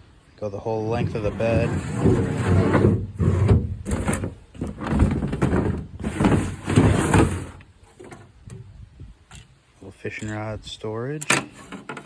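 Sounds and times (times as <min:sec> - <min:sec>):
storage tote scraping on wood: 0:00.9 - 0:08.4, 0:11.4 - 0:12.0.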